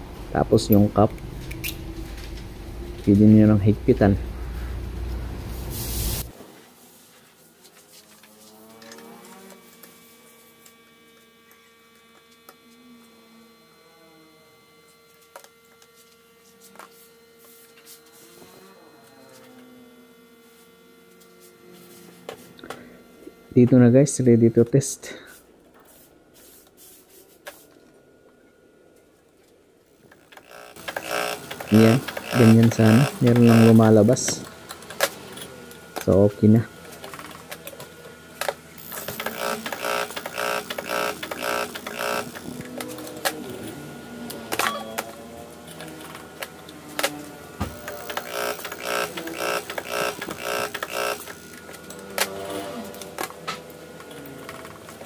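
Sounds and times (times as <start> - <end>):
electrical hum: 0.0 - 55.0
fuel injector buzzing pulse: 30.0 - 37.5, 38.4 - 44.0, 46.0 - 55.0.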